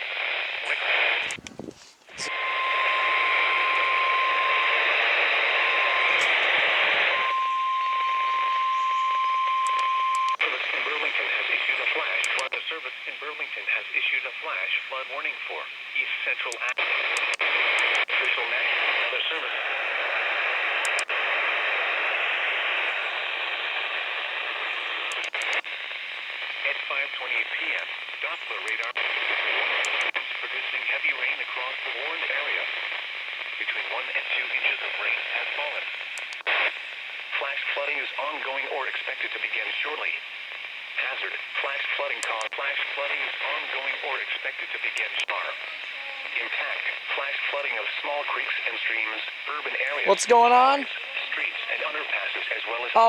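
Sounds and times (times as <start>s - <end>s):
loud radio static: 0.0s - 53.0s
steady warning beep: 2.2s - 10.4s.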